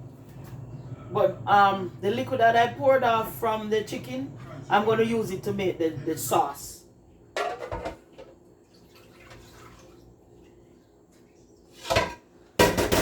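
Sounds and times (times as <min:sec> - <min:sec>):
juices trickling: 0:08.3 - 0:11.7.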